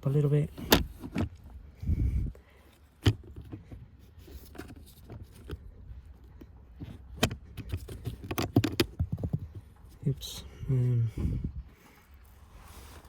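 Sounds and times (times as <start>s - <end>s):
plastic parts clicking and knocking: 0.5s - 1.4s, 3.0s - 9.9s.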